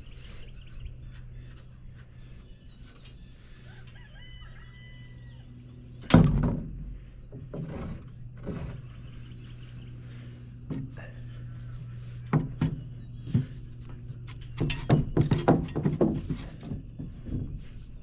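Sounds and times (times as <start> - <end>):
steady low hum: 0.0 - 18.0
rooster crowing faintly: 3.6 - 5.7.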